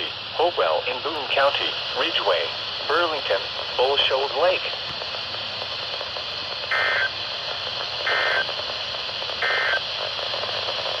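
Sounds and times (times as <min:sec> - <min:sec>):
radio hiss: 0:00.0 - 0:11.0
buzzy two-tone data bursts: 0:06.7 - 0:07.2, 0:08.0 - 0:08.5, 0:09.4 - 0:09.8.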